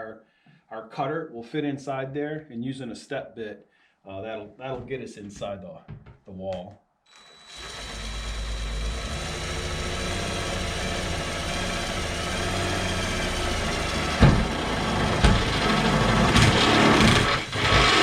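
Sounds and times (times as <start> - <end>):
drill bit knocking: 7.1 - 18.0
power drill motor whine: 7.1 - 18.0.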